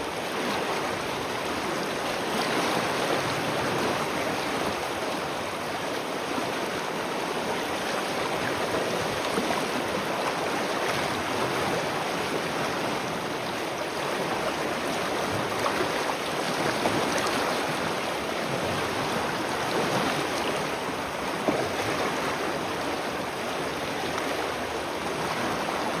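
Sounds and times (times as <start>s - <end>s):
spring water running and splashing: 7.7s - 26.0s.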